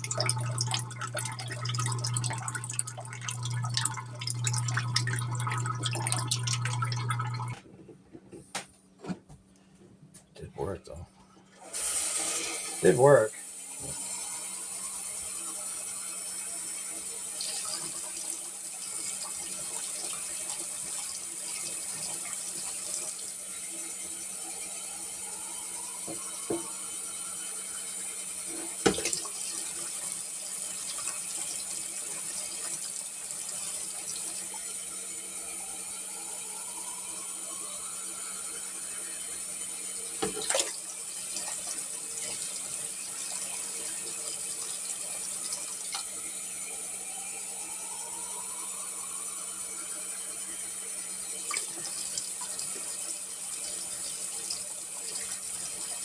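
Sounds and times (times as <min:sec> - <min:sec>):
water spraying inside dishwasher: 0:00.0 - 0:07.6, 0:11.6 - 0:56.0
low steady hum: 0:00.0 - 0:07.9.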